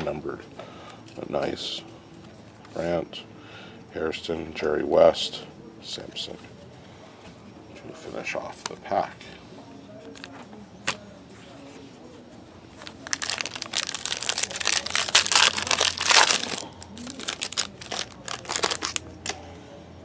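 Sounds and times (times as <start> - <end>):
foil wrapper tearing and crinkling: 12.8 - 19.0.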